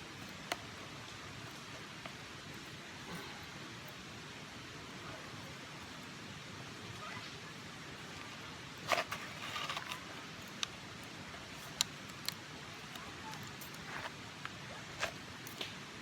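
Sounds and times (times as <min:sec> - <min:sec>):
steady background hiss: 0:00.0 - 0:16.0
rustling scrape: 0:08.0 - 0:10.6, 0:11.4 - 0:15.6.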